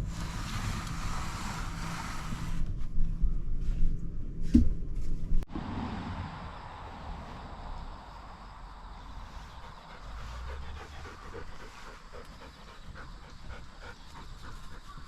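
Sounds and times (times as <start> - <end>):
dog panting: 9.0 - 15.0.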